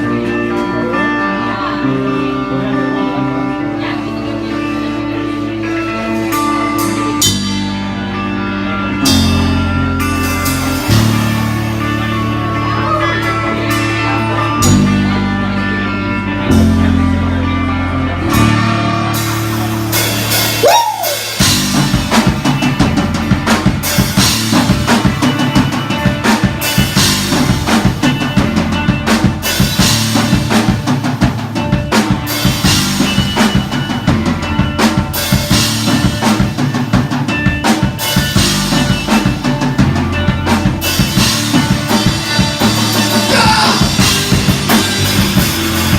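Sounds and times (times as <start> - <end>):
band playing low held chords: 0.0 - 45.9
fast drum beat: 19.2 - 45.9.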